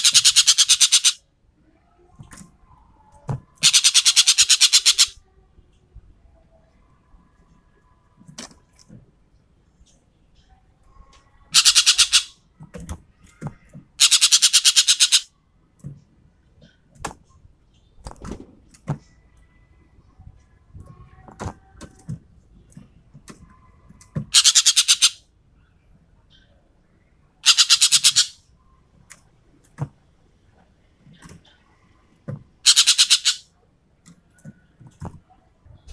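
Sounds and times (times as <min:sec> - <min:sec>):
songbird rattling bursts: 0:00.0 - 0:01.2, 0:03.6 - 0:05.2, 0:11.5 - 0:12.3, 0:14.0 - 0:15.3, 0:24.3 - 0:25.2, 0:27.4 - 0:28.4, 0:32.6 - 0:33.4
bird clicks and chirps: 0:14.0 - 0:15.2, 0:32.7 - 0:33.4.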